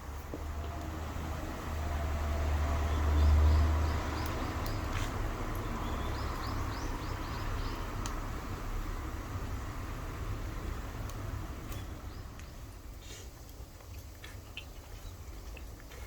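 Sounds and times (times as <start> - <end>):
bird chirping: 5.6 - 8.0.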